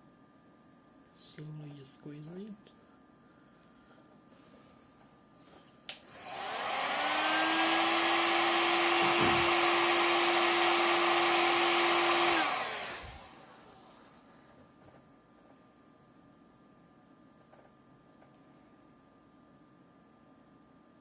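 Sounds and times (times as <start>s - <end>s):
electric tool whirring hum: 5.9s - 14.4s.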